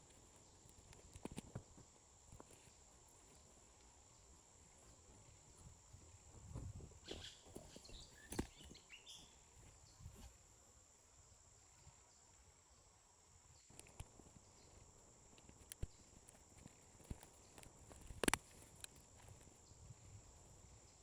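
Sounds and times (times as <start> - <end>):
insect drone: 0.0 - 21.0
sharp clicks and snaps: 15.3 - 19.1.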